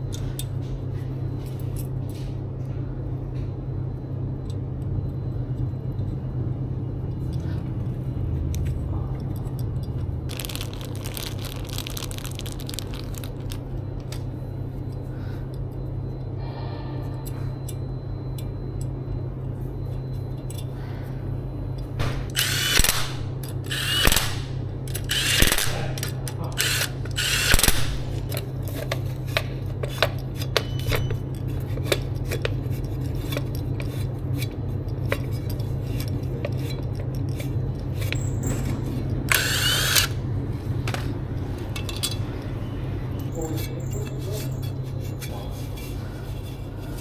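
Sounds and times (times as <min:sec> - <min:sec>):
power drill running: 0:39.3 - 0:40.2.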